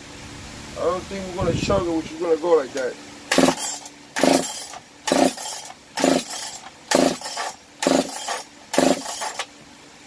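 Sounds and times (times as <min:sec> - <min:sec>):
engine turning over: 0:03.3 - 0:09.5
recoil starter pulls: 0:03.3 - 0:09.5.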